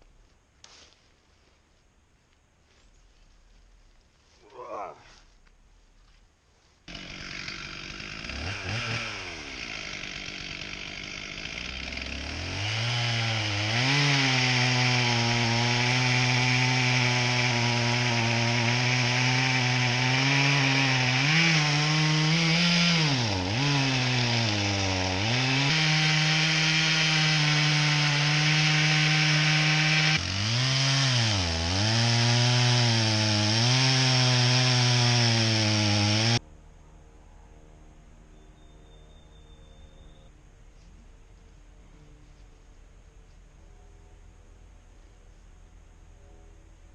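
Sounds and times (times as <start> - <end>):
chainsaw cutting log: 6.9 - 36.4.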